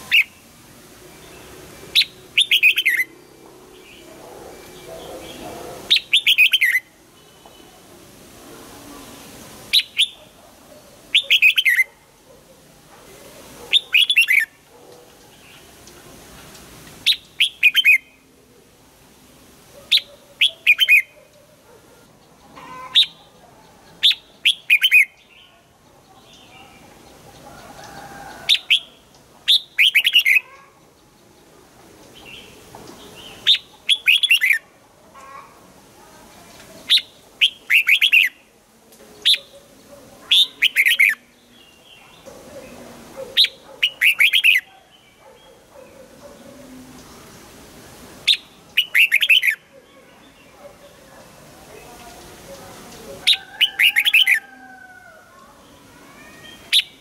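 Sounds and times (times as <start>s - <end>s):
bird singing warbled phrases: 0.0s - 0.5s, 1.1s - 7.8s, 9.0s - 12.8s, 13.4s - 18.3s, 19.8s - 47.5s, 48.2s - 54.5s, 55.5s - 57.0s.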